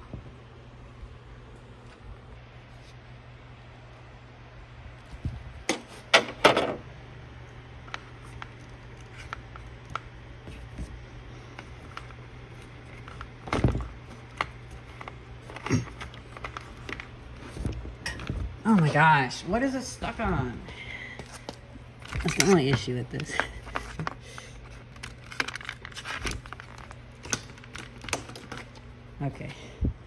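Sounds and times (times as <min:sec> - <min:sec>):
low steady hum: 0:00.0 - 0:30.0
objects knocking and clunking: 0:05.7 - 0:06.9, 0:13.0 - 0:19.0.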